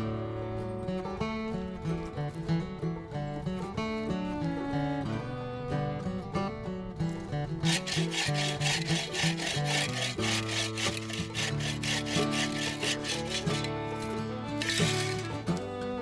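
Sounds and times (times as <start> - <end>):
background music: 3.5 - 16.0
hand saw cutting wood: 7.1 - 16.0.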